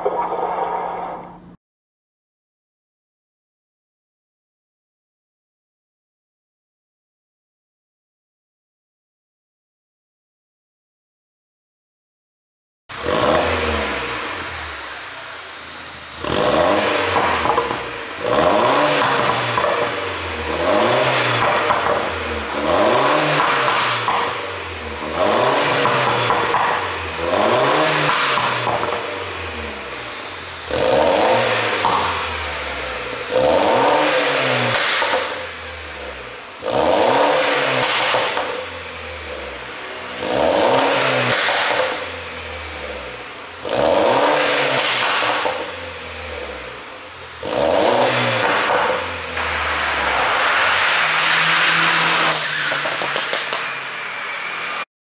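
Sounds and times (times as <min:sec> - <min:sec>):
car engine revving: 0:12.9 - 0:54.9.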